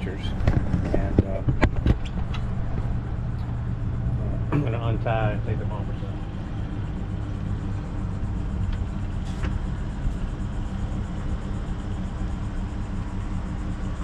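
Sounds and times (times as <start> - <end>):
boat engine idling: 0.0 - 14.0.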